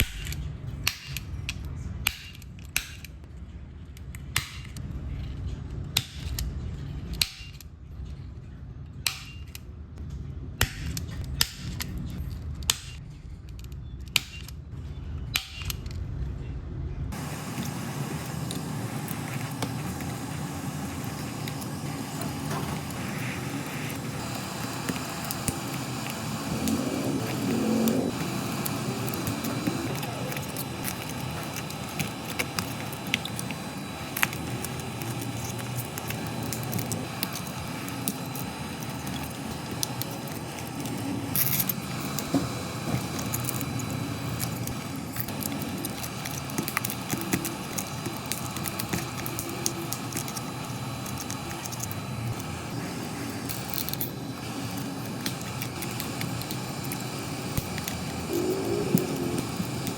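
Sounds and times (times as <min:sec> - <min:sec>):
steady low hum: 0:16.8 - 0:59.9.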